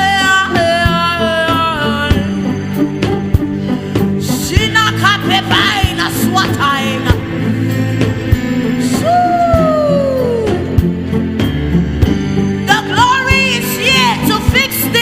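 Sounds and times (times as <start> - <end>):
person singing: 0.0 - 7.4, 8.8 - 10.9
gospel worship music: 0.0 - 15.0.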